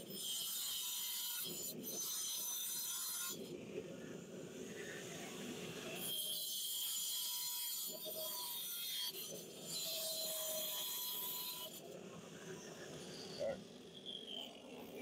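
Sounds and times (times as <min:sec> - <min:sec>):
angle grinder cutting steel: 0:00.0 - 0:03.4, 0:06.0 - 0:11.8.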